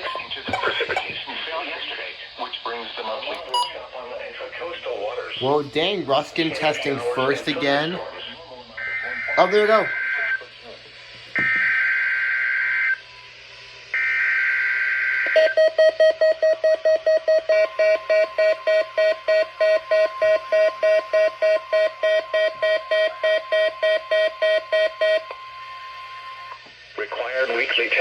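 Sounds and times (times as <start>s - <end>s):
electronic alarm beeping rapidly: 0.0s - 1.1s, 3.4s - 3.8s
two-tone data bursts: 0.0s - 1.2s, 3.4s - 3.8s
faint steady tone: 3.4s - 3.8s.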